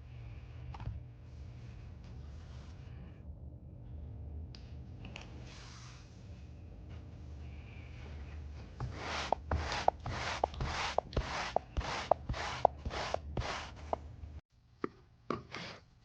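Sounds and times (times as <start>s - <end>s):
brush scraping across fabric: 8.8s - 14.0s.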